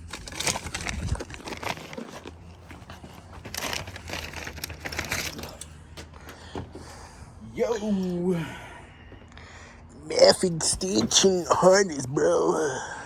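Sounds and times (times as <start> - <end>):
crinkling and rustling: 0.0 - 6.9
low steady hum: 0.0 - 13.0.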